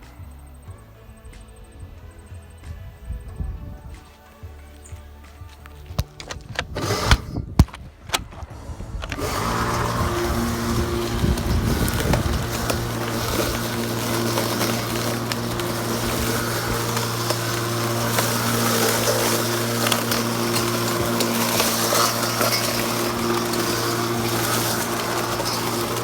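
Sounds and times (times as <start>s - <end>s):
rustling crackling noise: 5.5s - 26.0s
electric lawnmower humming: 6.6s - 7.4s, 8.4s - 26.0s.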